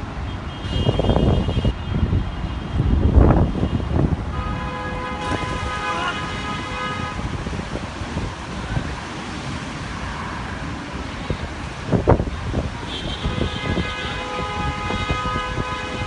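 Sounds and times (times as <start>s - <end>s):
traffic noise: 0.0s - 16.0s
vehicle horn tone: 0.3s - 2.1s, 3.5s - 7.3s, 12.9s - 16.0s
wind buffeting microphone: 0.6s - 16.0s.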